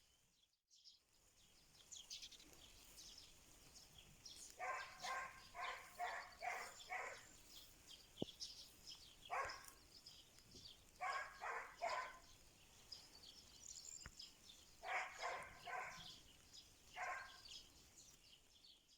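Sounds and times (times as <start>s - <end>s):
small birds chirping: 0.0s - 18.9s
distant dog barking: 4.6s - 7.4s, 9.3s - 9.8s, 11.0s - 12.3s, 14.8s - 16.2s, 16.9s - 17.4s.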